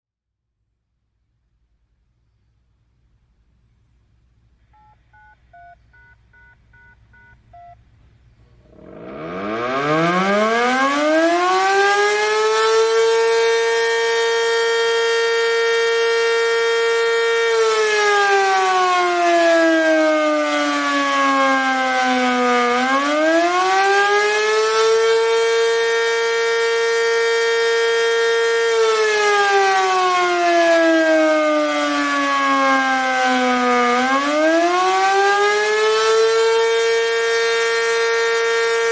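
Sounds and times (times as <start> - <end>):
short faint radio beeps: 4.7 - 7.8
warning siren rising and falling: 8.6 - 38.9.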